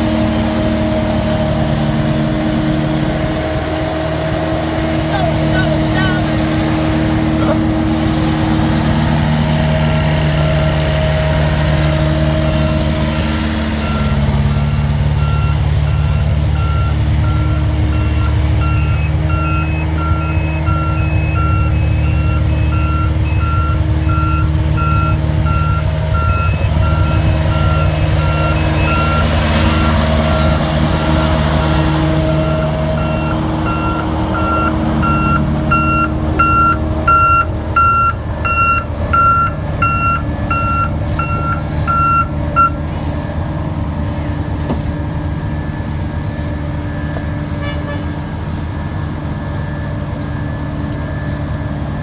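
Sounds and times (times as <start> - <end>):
diesel engines running: 0.0 - 52.0
reversing alarm beeping: 12.6 - 42.8.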